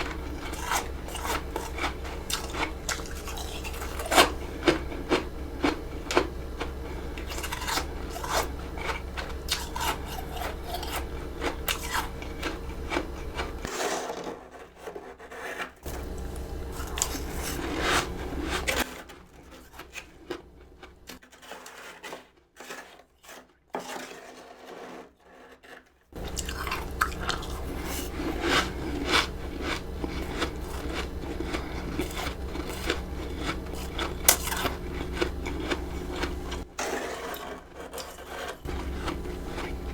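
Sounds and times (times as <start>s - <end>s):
frost being crunched and chewed: 0.0s - 13.7s, 15.9s - 18.8s, 19.5s - 21.2s, 26.2s - 36.7s, 38.0s - 39.9s.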